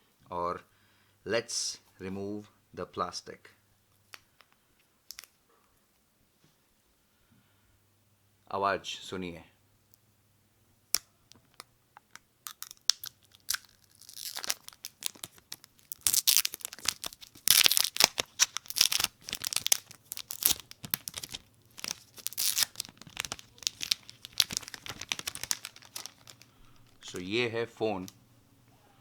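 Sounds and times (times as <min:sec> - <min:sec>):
plastic wrap crackling and tearing: 0:11.4 - 0:27.4.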